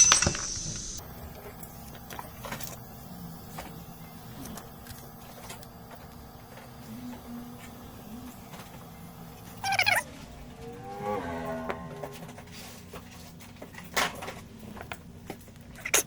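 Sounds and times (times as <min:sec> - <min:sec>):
flux sizzling hiss: 0:00.0 - 0:10.8
steady low hum: 0:00.0 - 0:16.0.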